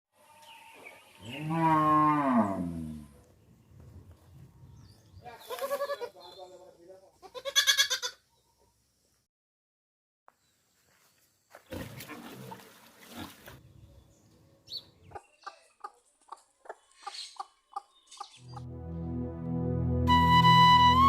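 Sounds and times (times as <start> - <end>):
farm animal calling: 5.3 - 6.5, 7.2 - 8.2.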